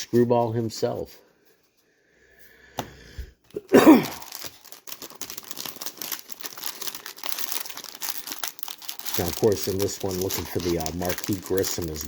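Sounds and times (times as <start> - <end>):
plastic wrapper tearing and crinkling: 3.5 - 12.0.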